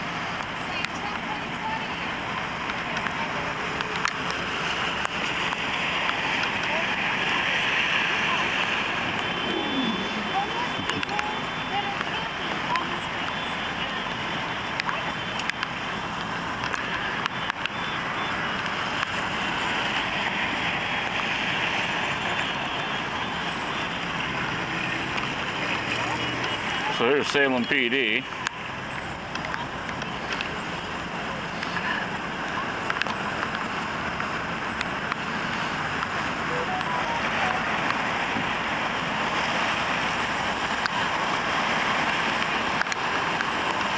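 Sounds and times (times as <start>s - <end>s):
passing traffic: 0.0s - 43.9s
faint clicks: 2.5s - 6.8s, 8.6s - 17.8s, 28.3s - 38.5s, 39.4s - 43.9s.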